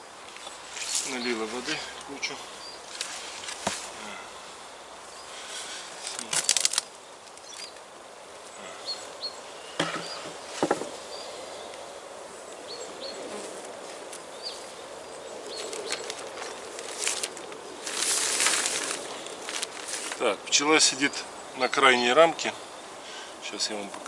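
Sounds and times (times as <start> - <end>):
honeybees humming: 0.0 - 24.0
clicks and knocks from hive: 6.1 - 7.8, 9.8 - 11.0.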